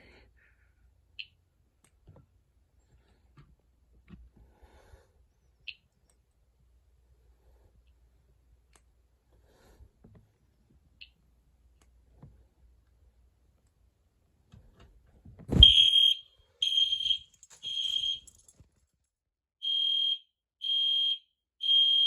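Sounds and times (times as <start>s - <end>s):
fire alarm horn beeping: 15.6s - 18.4s, 19.6s - 22.0s.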